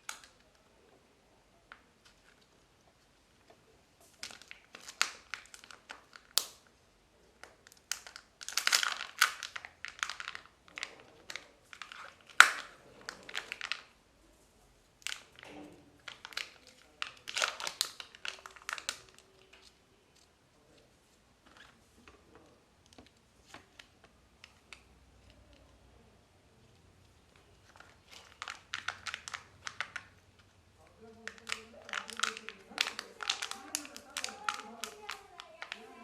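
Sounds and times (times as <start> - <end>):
wrappers crinkling and tearing: 4.0 - 6.7, 7.4 - 13.9, 15.0 - 20.3, 27.4 - 36.0.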